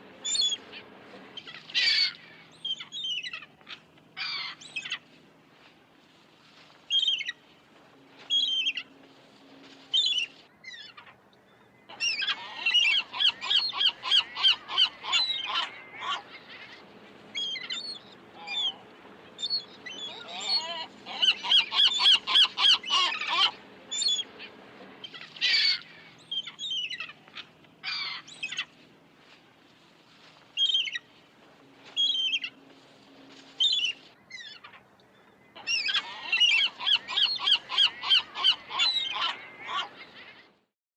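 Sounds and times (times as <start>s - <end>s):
gulls squawking: 0.2s - 5.1s, 11.9s - 28.8s, 35.5s - 40.6s
gulls laughing calls: 0.2s - 5.2s, 11.9s - 28.8s, 33.5s - 40.7s.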